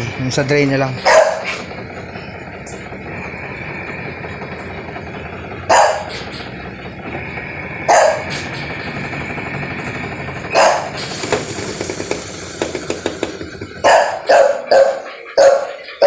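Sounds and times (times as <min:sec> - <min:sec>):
washing machine running: 0:00.0 - 0:16.0
dog barking: 0:01.0 - 0:01.7, 0:05.7 - 0:06.3, 0:07.9 - 0:08.5, 0:10.5 - 0:11.0, 0:13.8 - 0:16.0.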